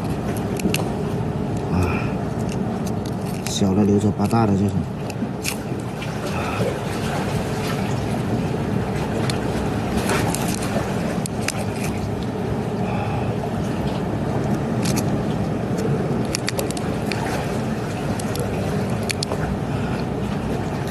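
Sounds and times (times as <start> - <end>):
strong wind: 0.0 - 20.9.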